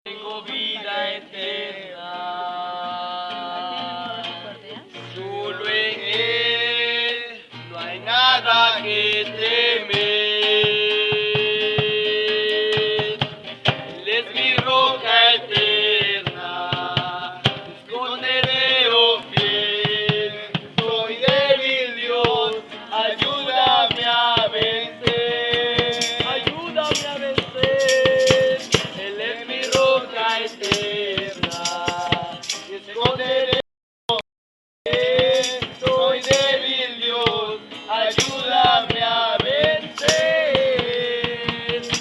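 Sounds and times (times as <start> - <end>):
struck percussion: 10.0 - 21.6, 22.2 - 34.2, 34.9 - 42.0
shaken rattle: 25.5 - 32.8, 34.9 - 36.8, 38.0 - 42.0.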